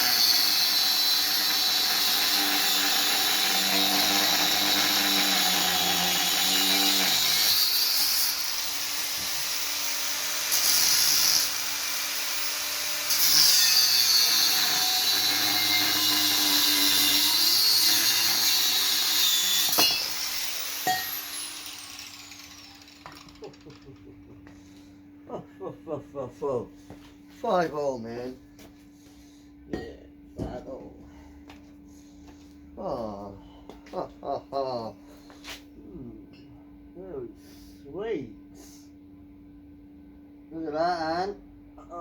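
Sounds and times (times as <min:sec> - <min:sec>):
power tool cutting steel: 0:00.0 - 0:23.8.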